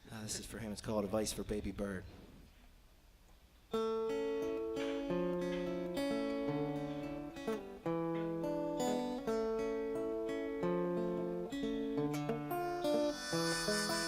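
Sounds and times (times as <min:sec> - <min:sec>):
acoustic plucked-string chords: 0:03.8 - 0:14.0.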